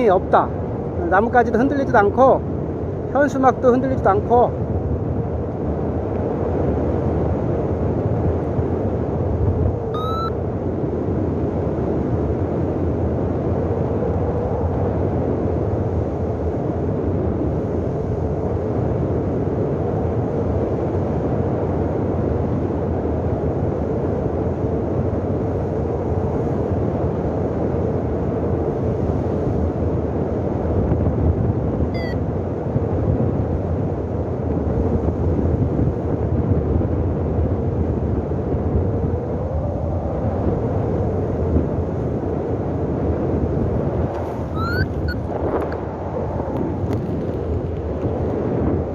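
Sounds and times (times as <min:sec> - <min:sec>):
wind rushing over microphone: 0:00.0 - 0:48.9
faint rising chirps: 0:10.0 - 0:10.3, 0:32.0 - 0:32.2, 0:44.6 - 0:45.2.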